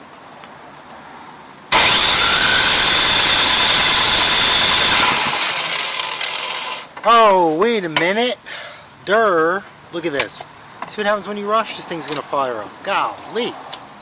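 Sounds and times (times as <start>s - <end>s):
snowblower engine cranking: 1.7s - 6.9s.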